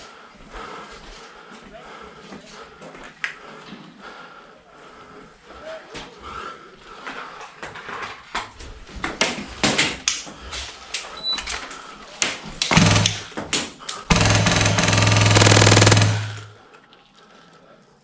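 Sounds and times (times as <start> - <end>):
airsoft single shots: 12.7 - 13.3, 14.1 - 16.5
airsoft automatic bursts: 12.7 - 13.4, 14.1 - 16.6.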